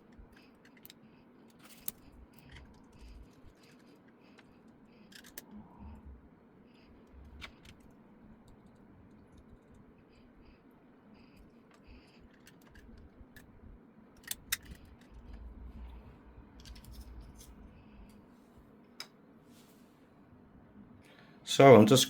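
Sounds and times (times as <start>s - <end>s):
small hard parts clicking: 0.0s - 5.5s, 11.2s - 13.6s, 14.2s - 18.1s
low rumble: 5.4s - 10.6s, 14.4s - 18.7s.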